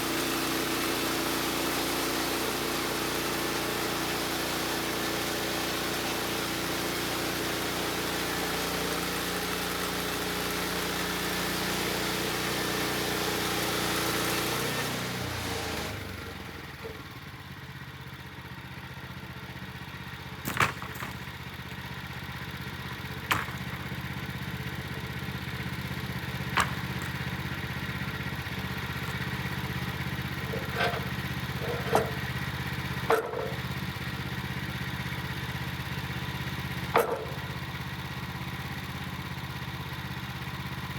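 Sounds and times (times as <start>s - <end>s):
bandsaw mill engine: 0.0s - 40.9s
sharp knocks: 33.1s - 33.6s.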